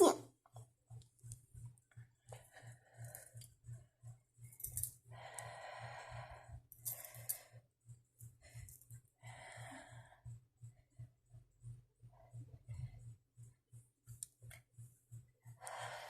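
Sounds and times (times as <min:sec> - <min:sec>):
woman breathing heavily: 0:01.9 - 0:13.8, 0:15.1 - 0:16.0.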